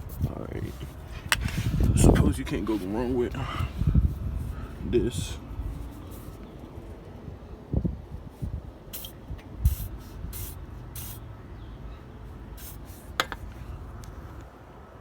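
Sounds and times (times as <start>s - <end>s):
aerosol can spraying: 9.0s - 11.2s.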